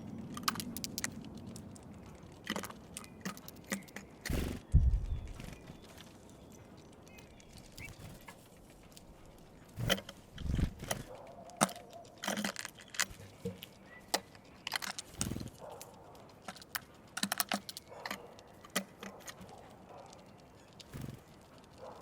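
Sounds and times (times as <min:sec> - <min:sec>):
birds tapping at feeder: 0:02.4 - 0:08.6, 0:09.7 - 0:21.3
soft low thuds: 0:04.6 - 0:05.4.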